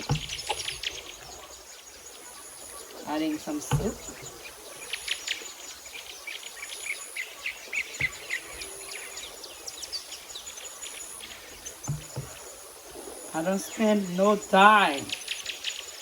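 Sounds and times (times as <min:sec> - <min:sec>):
soft knock: 0:00.0 - 0:00.7, 0:11.9 - 0:12.4
small birds chirping: 0:00.0 - 0:16.0.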